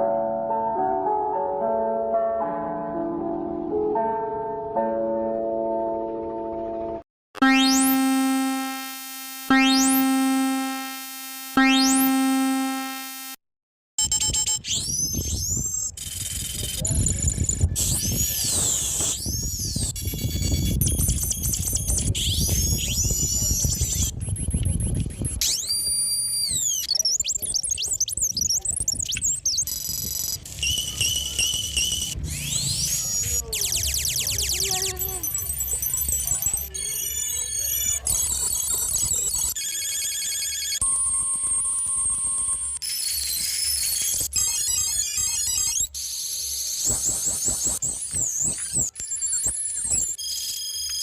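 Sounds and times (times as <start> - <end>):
gliding alarm tones: 7.4 - 13.4, 28.9 - 50.9
held synth chord: 7.4 - 13.4.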